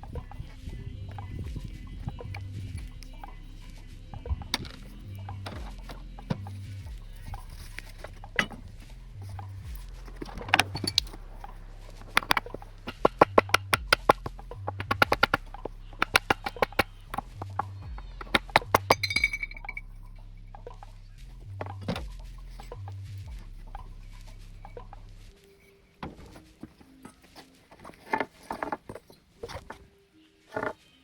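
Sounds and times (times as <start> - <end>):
metal clinking and tapping: 4.2 - 19.9
ringing metallic tone: 16.2 - 20.8.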